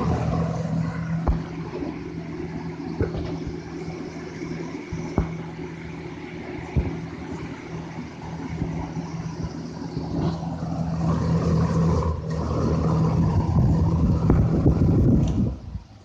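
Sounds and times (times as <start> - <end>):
fan motor hum: 0.0 - 16.0
rush of moving air: 6.6 - 16.0.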